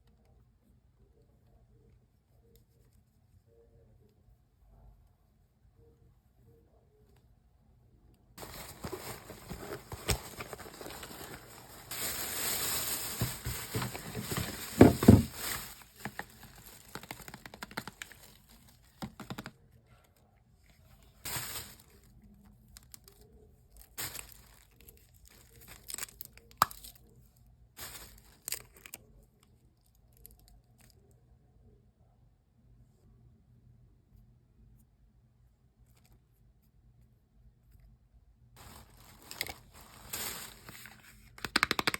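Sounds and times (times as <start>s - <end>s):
packaging tearing and crinkling: 8.4s - 19.5s, 21.2s - 21.9s, 27.8s - 29.0s, 38.6s - 41.9s.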